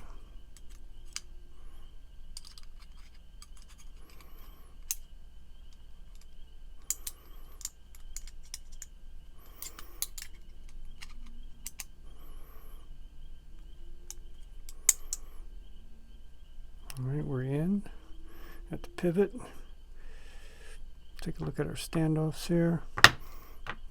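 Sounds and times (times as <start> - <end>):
pocket knife parts clicking: 2.4 - 5.0, 6.1 - 8.9, 9.5 - 11.9, 14.1 - 15.2.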